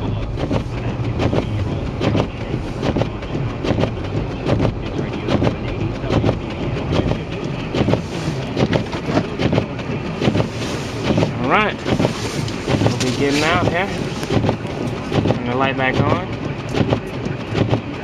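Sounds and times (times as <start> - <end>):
low engine hum: 0.0 - 18.0
snow crunching and knocking: 6.1 - 17.8.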